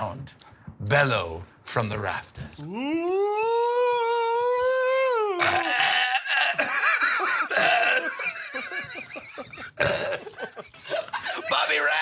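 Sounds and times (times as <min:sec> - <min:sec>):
long vocal wail: 0:02.6 - 0:06.8
group laughing loudly: 0:05.4 - 0:12.0.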